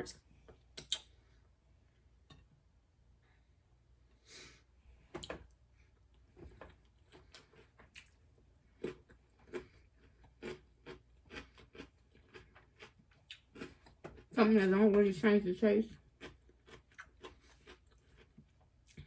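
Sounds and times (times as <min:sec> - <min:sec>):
faint chewing with wet smacks: 0:06.7 - 0:14.4, 0:16.0 - 0:19.0.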